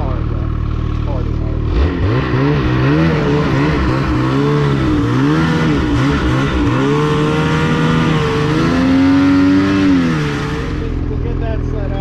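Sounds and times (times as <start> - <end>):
snowmobile engine revving: 0.0 - 12.0.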